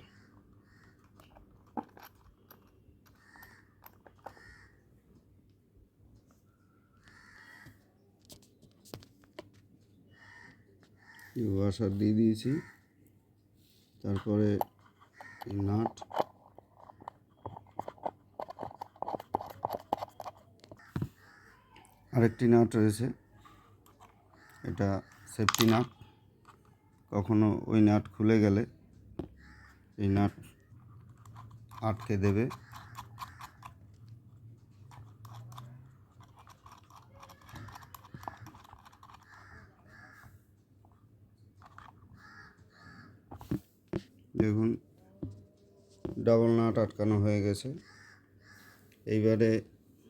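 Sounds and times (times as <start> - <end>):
nut threading metallic clicks: 0.8 - 4.4, 14.1 - 20.9, 23.8 - 26.6, 31.0 - 39.6
metal hardware clicking and tapping: 25.3 - 25.9.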